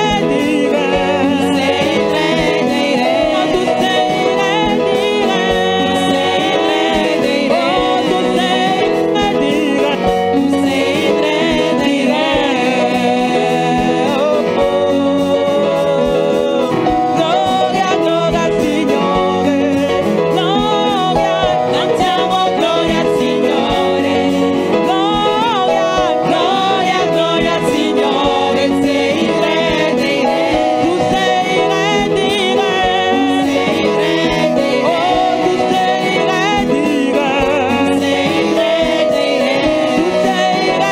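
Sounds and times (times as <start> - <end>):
gospel worship music: 0.0 - 40.9
singing over instruments: 0.0 - 40.9.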